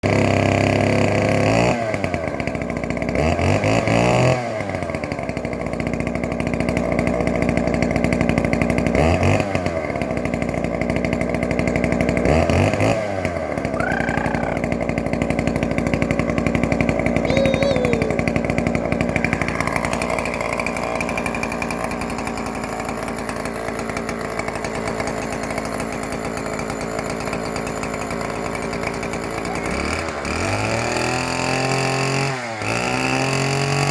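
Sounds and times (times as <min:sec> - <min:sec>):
chainsaw ripping a log: 0:18.1 - 0:33.9.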